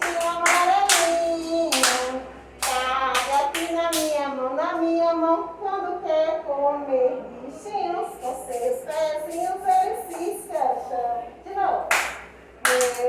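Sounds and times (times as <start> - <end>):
hand claps: 0.0 - 4.2, 11.9 - 13.0.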